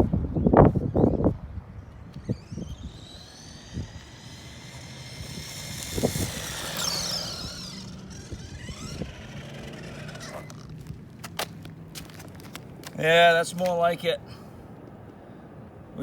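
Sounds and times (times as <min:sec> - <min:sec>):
electric motor whining: 0:00.9 - 0:11.7.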